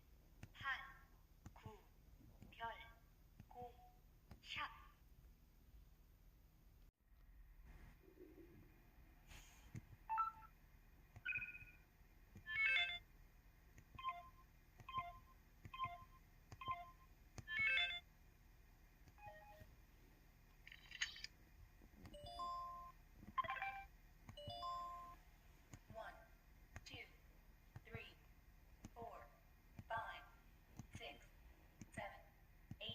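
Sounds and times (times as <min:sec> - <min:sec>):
phone electronic beeps and chimes: 0:11.2 - 0:11.8, 0:14.0 - 0:18.0, 0:22.2 - 0:25.2.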